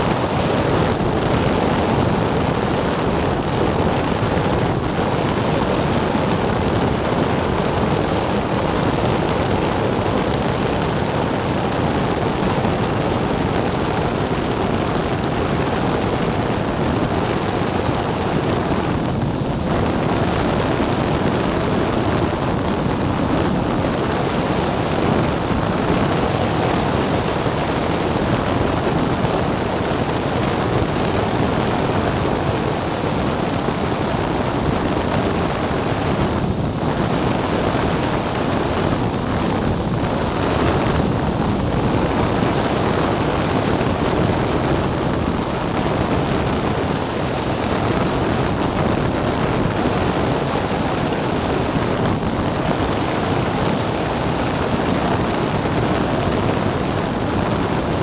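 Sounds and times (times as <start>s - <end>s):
light aircraft in-flight noise: 0.0s - 58.0s.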